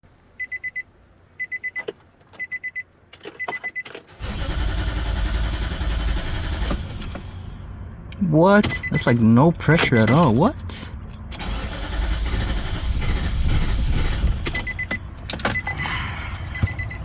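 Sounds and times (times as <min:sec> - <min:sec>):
dashboard chime beeping: 0:00.4 - 0:03.9, 0:08.2 - 0:10.9, 0:14.6 - 0:17.0
starter cranking engine: 0:04.1 - 0:07.4, 0:11.3 - 0:16.7.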